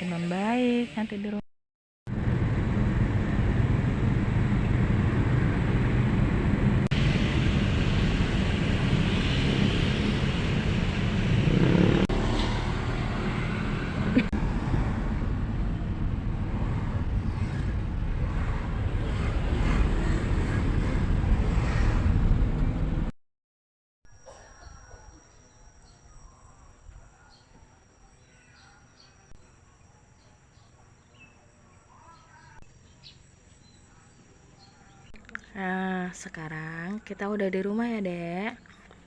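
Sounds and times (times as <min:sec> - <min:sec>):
vehicle engine and road rumble: 0:02.1 - 0:23.2.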